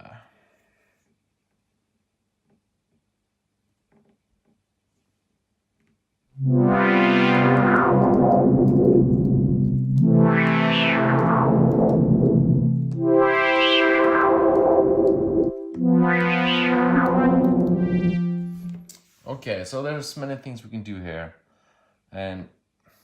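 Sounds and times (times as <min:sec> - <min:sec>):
synth pad chords: 0:06.4 - 0:18.9.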